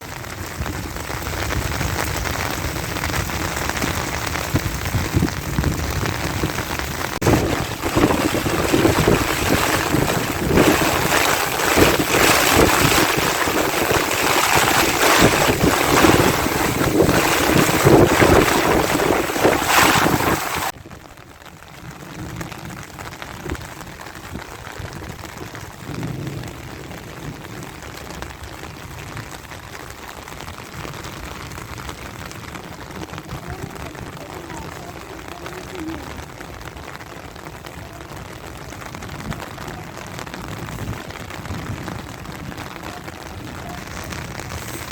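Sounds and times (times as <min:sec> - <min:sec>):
heavy rain pouring: 0:00.0 - 0:44.9
light rain: 0:00.0 - 0:44.9.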